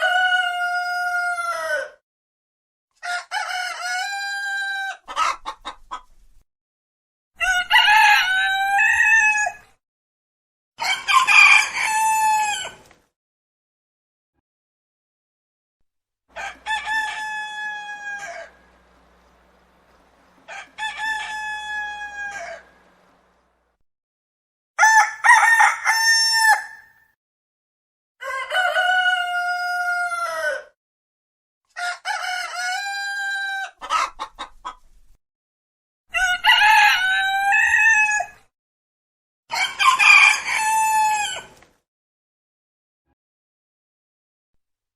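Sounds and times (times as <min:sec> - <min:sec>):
roosters crowing: 0:00.0 - 0:01.9, 0:03.0 - 0:05.3, 0:07.4 - 0:09.6, 0:10.8 - 0:12.8, 0:16.3 - 0:23.6, 0:24.8 - 0:27.0, 0:28.2 - 0:30.6, 0:36.1 - 0:38.4, 0:39.5 - 0:41.6.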